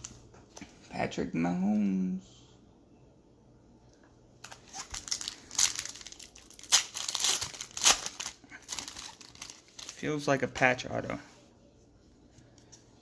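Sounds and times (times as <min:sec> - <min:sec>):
foil wrapper crinkling: 0:04.4 - 0:10.5.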